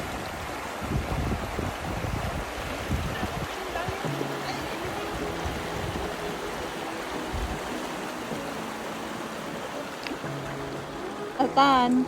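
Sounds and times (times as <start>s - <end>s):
river water rushing: 0.0s - 12.0s
faint pop song: 3.0s - 12.0s.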